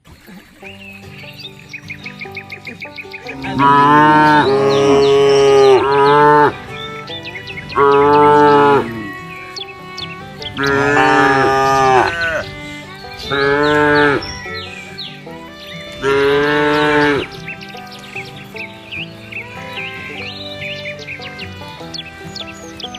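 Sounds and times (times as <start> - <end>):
cow mooing: 3.2 - 6.7, 7.8 - 9.2, 10.6 - 12.5, 13.3 - 14.2, 15.9 - 17.3.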